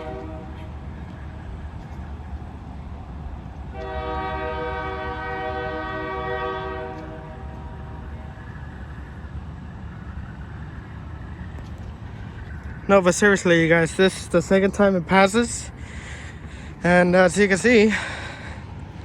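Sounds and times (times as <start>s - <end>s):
locomotive air horn blast: 0.0s - 1.0s, 3.7s - 8.4s
passing train rumble: 0.0s - 19.0s.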